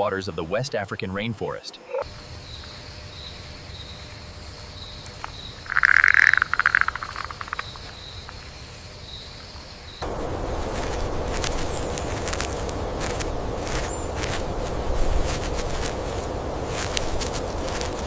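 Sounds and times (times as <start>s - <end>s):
frog croaking: 1.7s - 2.7s, 4.8s - 8.4s
steady low rush: 10.0s - 18.0s.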